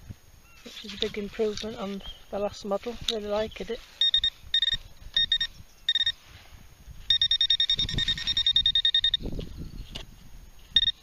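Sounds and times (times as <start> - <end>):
metal detector beeping: 3.1 - 6.2, 7.0 - 9.4, 10.7 - 11.0.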